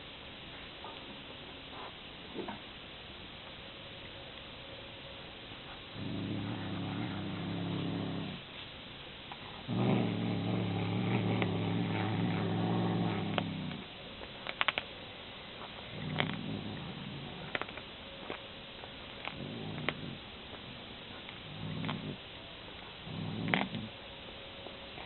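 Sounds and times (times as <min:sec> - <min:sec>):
cat growling: 0:06.0 - 0:08.4, 0:09.6 - 0:13.9, 0:15.8 - 0:17.7, 0:19.2 - 0:20.2, 0:21.4 - 0:22.2, 0:23.0 - 0:24.0.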